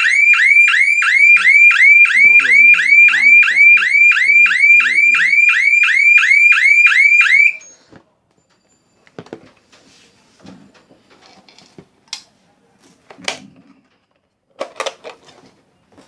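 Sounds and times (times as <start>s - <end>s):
alarm siren whooping: 0.0s - 7.8s.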